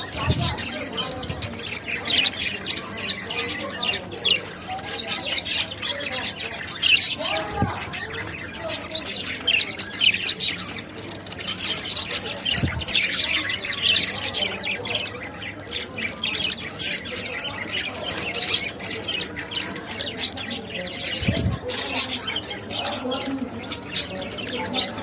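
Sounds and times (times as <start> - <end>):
budgerigars chattering: 0.0 - 25.0.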